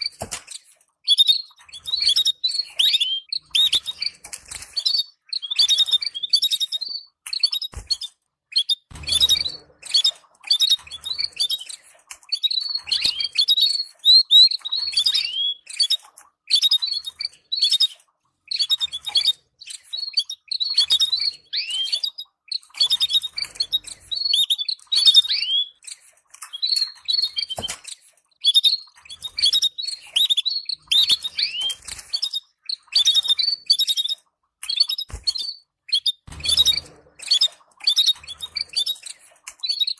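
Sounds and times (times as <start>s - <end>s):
canaries chirping: 0.0s - 39.9s.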